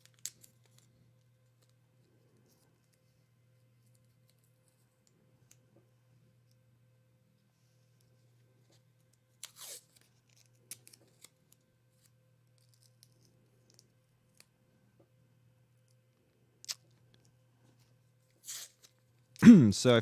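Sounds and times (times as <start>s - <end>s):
adhesive tape ripping: 9.4s - 10.0s, 18.4s - 19.0s.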